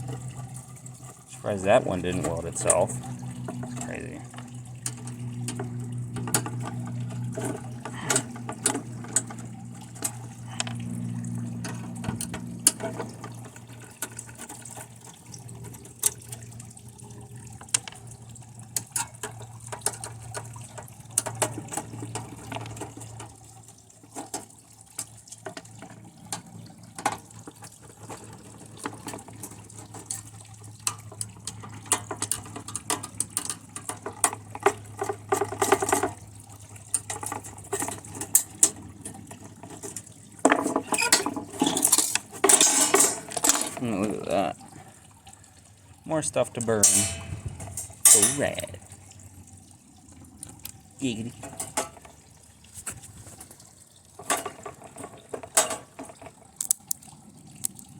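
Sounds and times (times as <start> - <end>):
steady low hum: 0.0 - 21.2, 42.9 - 51.9.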